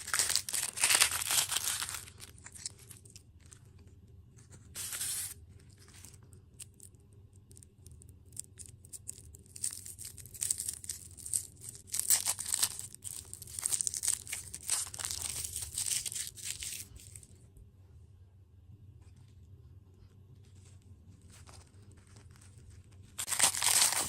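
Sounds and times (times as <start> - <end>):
plastic packaging crinkling: 0.0 - 3.6, 4.8 - 6.8, 8.4 - 17.3, 23.2 - 24.0.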